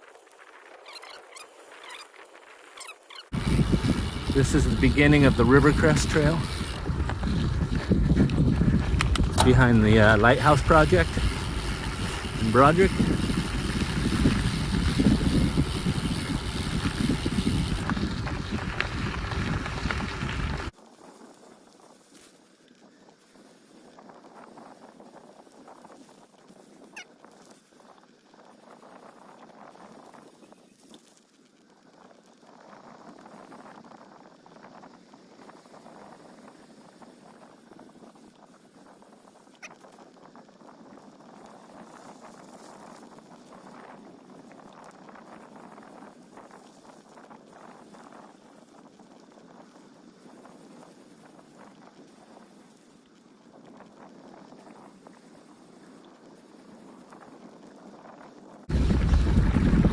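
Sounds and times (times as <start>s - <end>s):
footsteps crunching on dirt trail: 3.3s - 20.7s, 58.7s - 59.9s
wind buffeting microphone: 3.3s - 20.7s, 57.4s - 59.9s.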